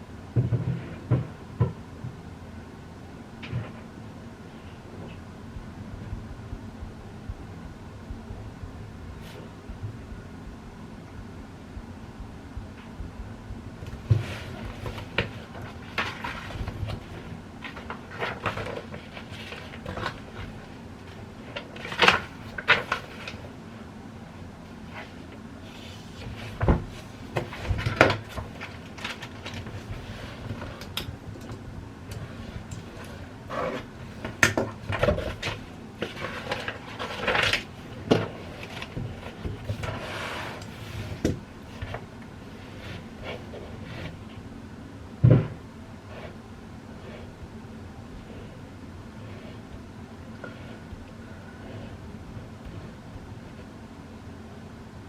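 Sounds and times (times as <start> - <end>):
low room hum: 0.0 - 55.0
rustling and sliding swishes: 35.0 - 44.4.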